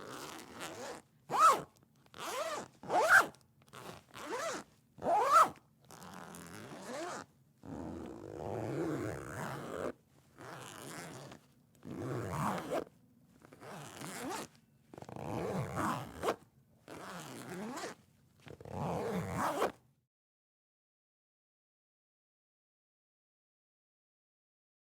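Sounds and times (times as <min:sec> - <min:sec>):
clothing zipper being zipped: 0:00.0 - 0:19.8.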